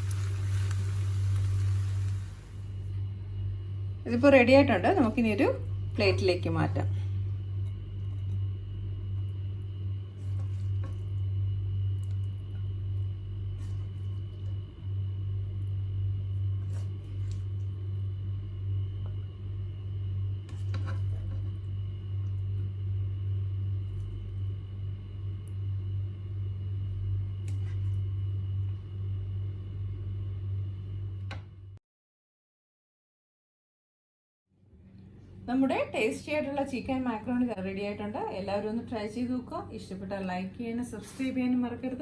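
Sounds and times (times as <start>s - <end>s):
steady low hum: 0.0s - 31.8s.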